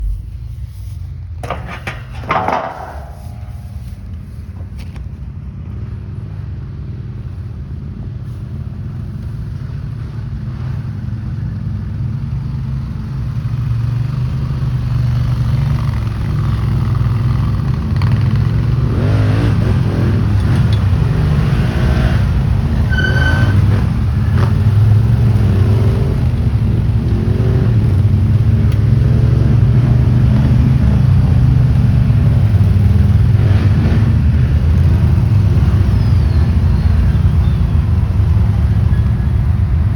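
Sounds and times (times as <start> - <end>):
atv engines revving: 5.8 - 39.9.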